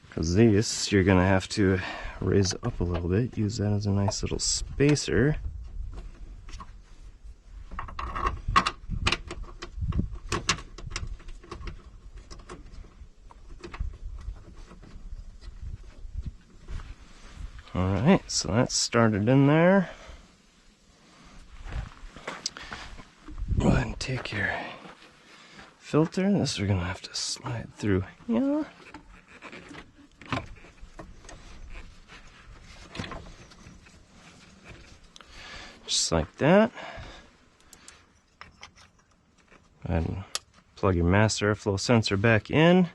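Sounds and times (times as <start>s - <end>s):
parts rubbing and scraping: 26.5s - 36.6s, 37.5s - 40.6s.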